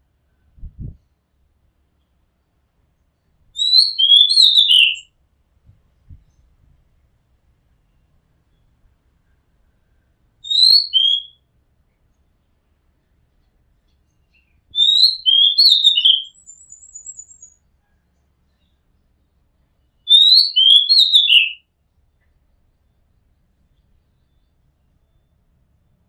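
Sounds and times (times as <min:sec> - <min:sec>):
high rapid bird trill: 0:03.6 - 0:05.0, 0:10.5 - 0:11.3, 0:14.8 - 0:17.6, 0:20.1 - 0:21.6
bird whistling song: 0:03.6 - 0:05.1, 0:10.4 - 0:11.4, 0:14.3 - 0:17.6, 0:20.0 - 0:21.6.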